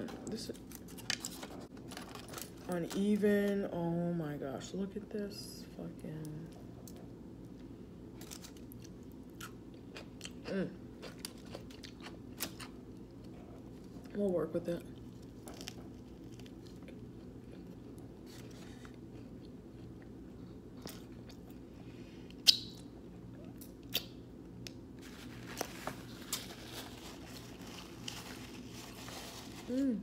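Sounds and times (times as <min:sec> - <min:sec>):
person chewing a sandwich: 0:06.8 - 0:14.1, 0:14.9 - 0:29.0.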